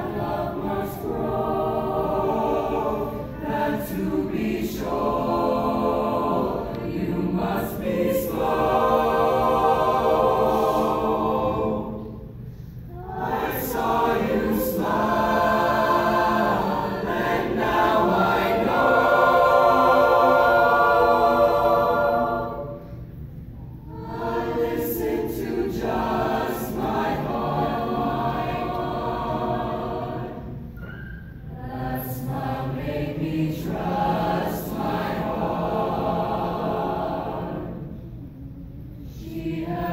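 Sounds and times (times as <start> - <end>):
choir singing held phrases: 0.0 - 39.9.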